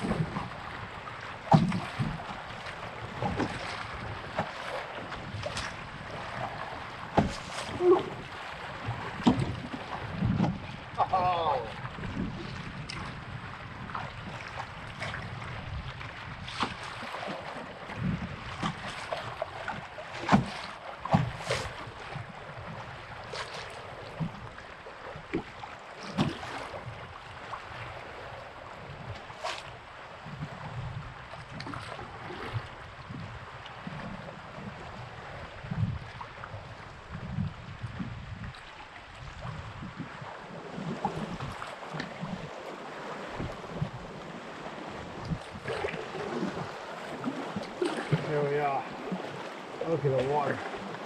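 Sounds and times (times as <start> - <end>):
paddle splashing: 0.0 - 51.0
waves slapping hull: 0.0 - 51.0
wind rumble on microphone: 0.0 - 51.0.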